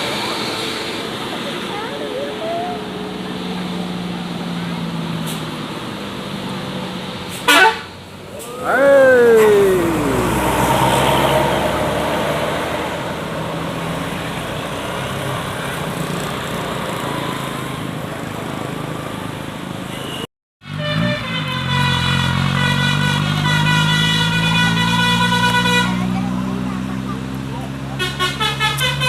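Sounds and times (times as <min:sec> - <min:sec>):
bus engine rising in pitch: 0:00.0 - 0:07.3, 0:08.2 - 0:16.0
buses passing: 0:00.0 - 0:29.0
bus horn long note: 0:07.4 - 0:07.9, 0:19.9 - 0:26.2, 0:28.0 - 0:29.0.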